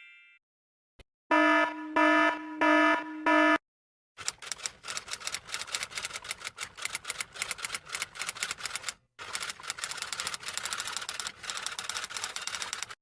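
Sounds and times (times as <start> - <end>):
typewriter keys clacking: 4.2 - 13.0.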